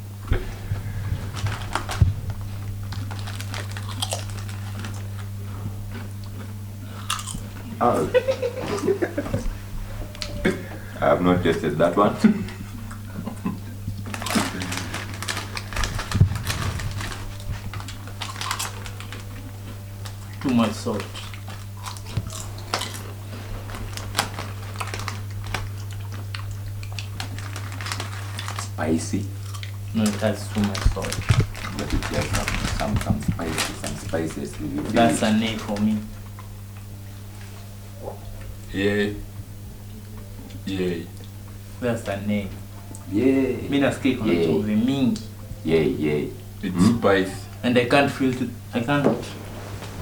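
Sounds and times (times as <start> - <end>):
crisp packet crinkling: 0.8 - 5.4, 14.0 - 36.0.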